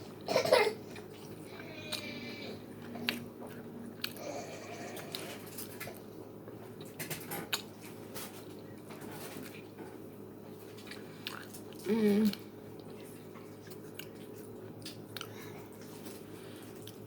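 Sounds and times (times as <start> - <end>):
person chewing: 2.8 - 6.1, 10.7 - 17.0.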